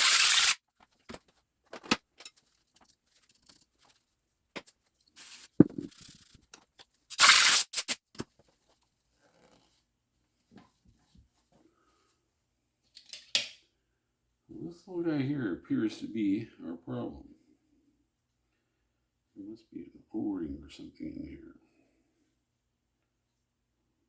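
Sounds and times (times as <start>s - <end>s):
short bursts of hiss: 0.0s - 0.6s, 5.2s - 6.4s, 7.1s - 8.0s.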